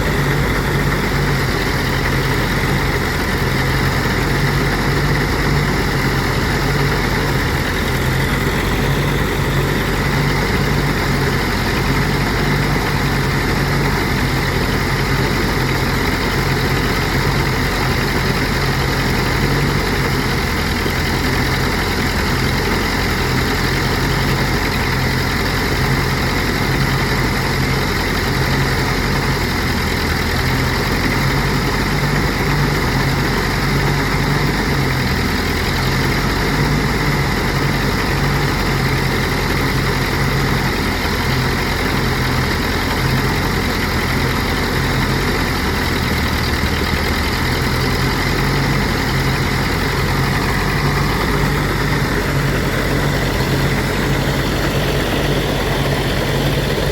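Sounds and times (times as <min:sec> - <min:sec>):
threshing rushing noise: 0:00.0 - 0:14.1, 0:48.3 - 0:56.9
threshing machine engine hum: 0:00.0 - 0:56.9.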